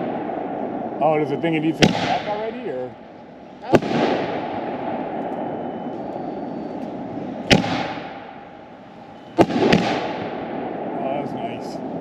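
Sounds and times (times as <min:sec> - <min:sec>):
firework shells bursting: 0:03.6 - 0:08.6, 0:09.4 - 0:10.6.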